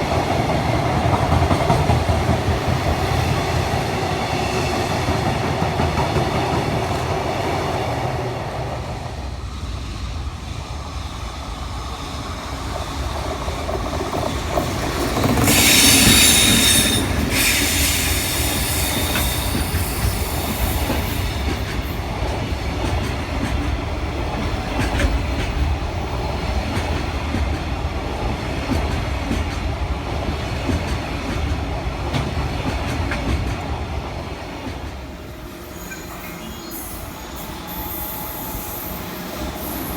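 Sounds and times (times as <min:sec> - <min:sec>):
freight train rumbling: 0:00.0 - 0:39.9
high-pitched train squeal: 0:15.0 - 0:22.1, 0:35.0 - 0:39.9.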